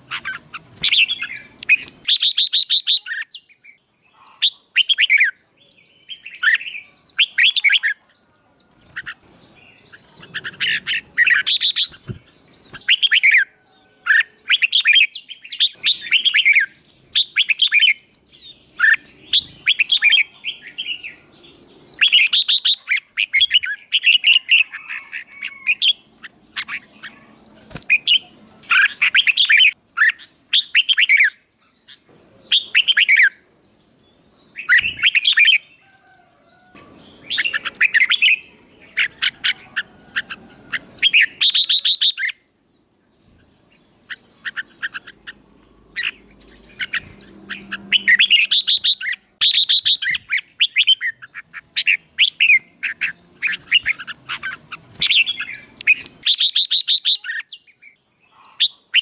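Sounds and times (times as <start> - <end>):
songbird chattering song: 0.0 - 59.0.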